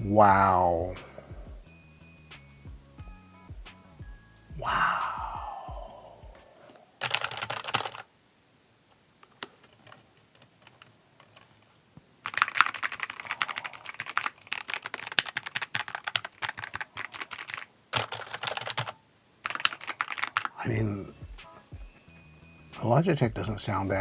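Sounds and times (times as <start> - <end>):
mechanical keyboard typing: 7.0 - 8.1, 9.3 - 20.6.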